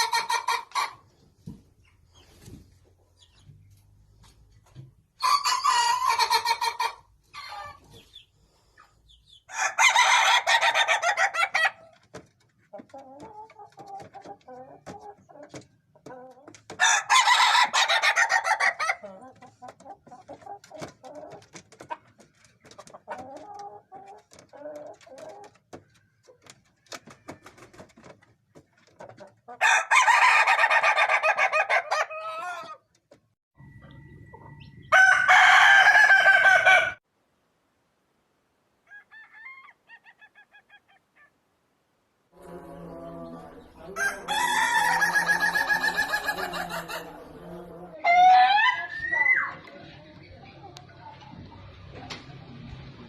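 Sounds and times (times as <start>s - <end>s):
chicken clucking: 0.0s - 36.9s, 38.9s - 41.3s, 42.4s - 52.8s
rooster crowing: 9.5s - 11.7s, 16.8s - 18.9s, 34.3s - 37.0s, 38.9s - 39.8s, 42.5s - 47.2s, 48.0s - 49.6s.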